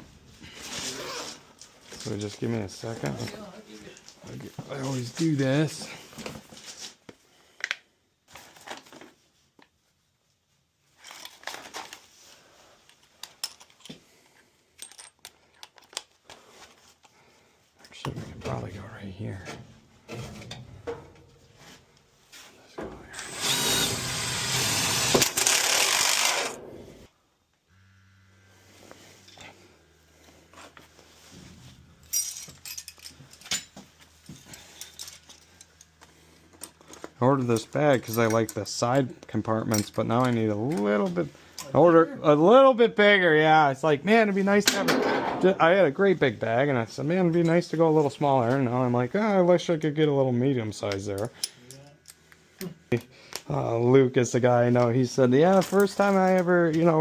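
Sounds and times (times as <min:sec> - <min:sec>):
tools and metal parts clinking: 0:11.0 - 0:12.0, 0:12.9 - 0:14.0, 0:14.7 - 0:16.3, 0:32.0 - 0:38.6, 0:39.6 - 0:40.4, 0:51.2 - 0:53.5
faint low hum: 0:27.6 - 0:39.9.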